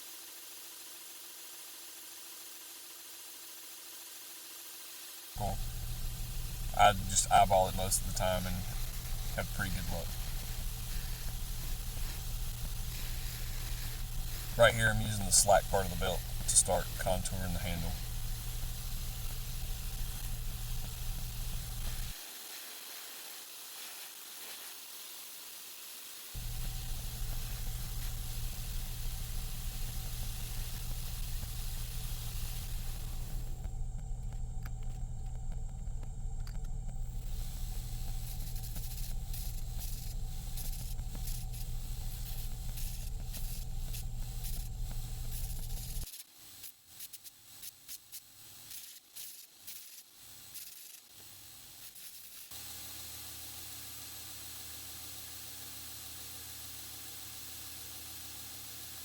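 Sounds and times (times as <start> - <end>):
grinder belt hissing: 0.0 - 59.0
low motor hum: 5.4 - 22.1, 26.4 - 46.1.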